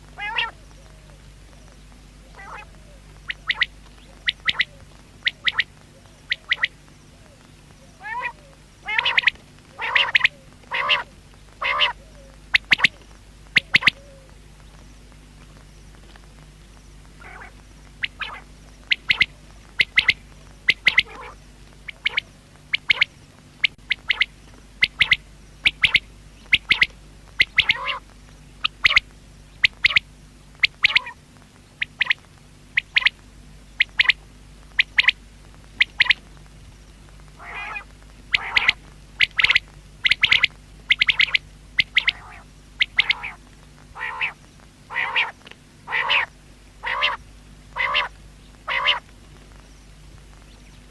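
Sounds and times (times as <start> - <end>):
quail calling: 0.2 - 14.4, 17.2 - 31.2, 31.8 - 36.3, 37.4 - 49.1.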